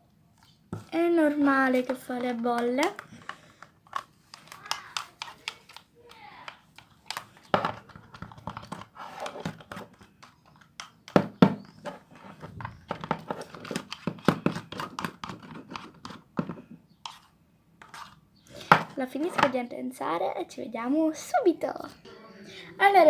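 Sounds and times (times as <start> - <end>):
slime squelching: 0.8 - 7.4.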